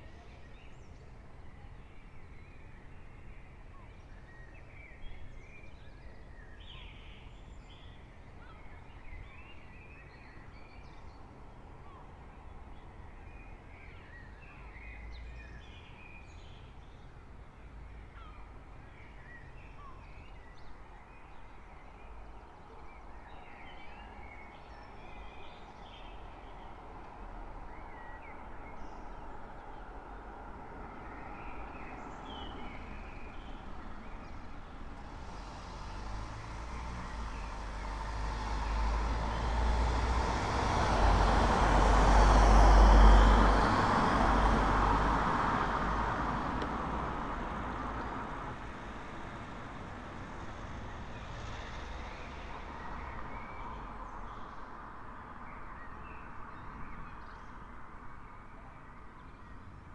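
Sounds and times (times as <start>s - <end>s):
road vehicle passing: 29.3s - 55.5s.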